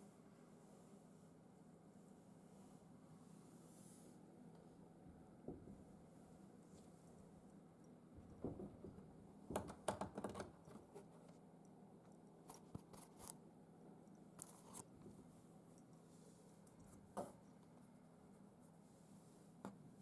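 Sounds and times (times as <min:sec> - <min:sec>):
cat scratching at sliding door: 0:08.7 - 0:11.2.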